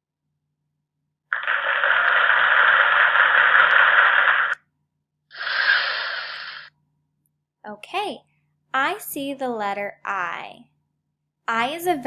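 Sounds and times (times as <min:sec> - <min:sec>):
static hiss bursts: 0:01.3 - 0:04.6, 0:05.3 - 0:06.7.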